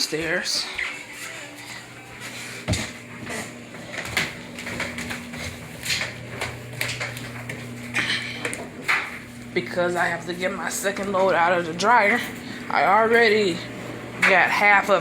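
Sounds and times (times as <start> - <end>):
low appliance hum: 0.0 - 15.0
footsteps going down stairs: 0.1 - 9.6.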